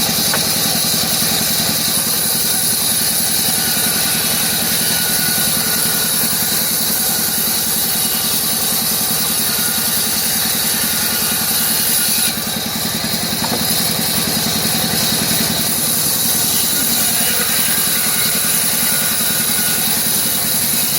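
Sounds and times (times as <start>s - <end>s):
router spindle cutting wood: 0.0s - 20.9s.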